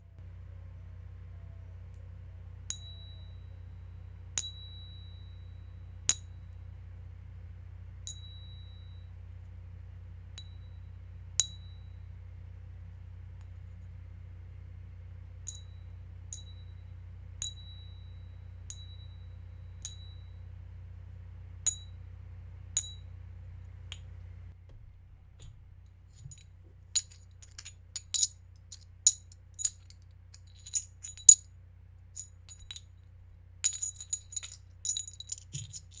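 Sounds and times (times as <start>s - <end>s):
coins clinking: 33.7s - 36.0s.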